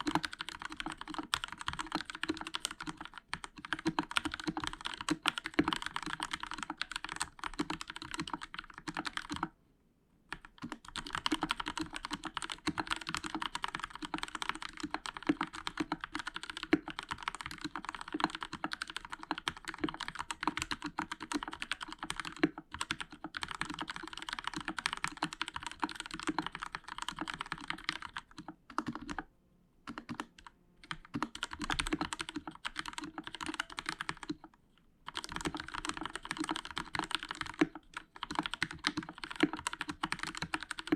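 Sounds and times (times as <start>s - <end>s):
fast mechanical keyboard typing: 0.0s - 9.5s, 10.3s - 29.2s, 29.9s - 34.5s, 35.1s - 40.9s.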